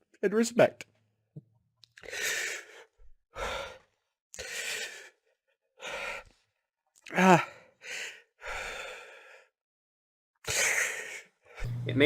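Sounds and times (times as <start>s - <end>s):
man's heavy sighing breaths: 2.0s - 5.2s, 7.2s - 9.5s.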